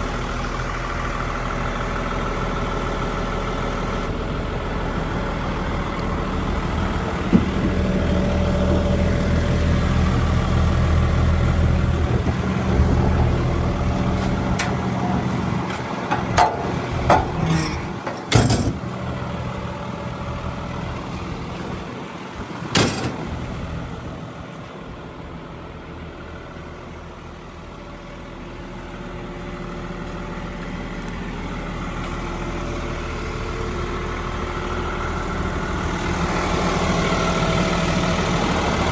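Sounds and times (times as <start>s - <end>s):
diesel excavator engine running: 0.0s - 38.9s
metallic knocks and clunks: 15.6s - 19.0s, 22.7s - 23.5s.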